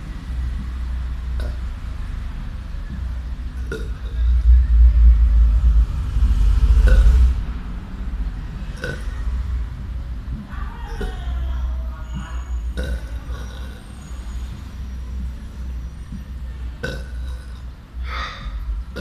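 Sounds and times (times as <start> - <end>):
boy burping: 8.8 - 9.2, 12.8 - 13.8, 16.8 - 19.0.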